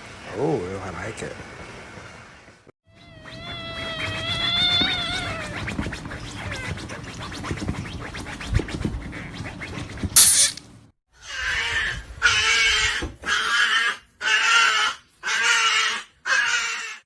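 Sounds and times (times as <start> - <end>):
pet whining: 2.9 - 7.8.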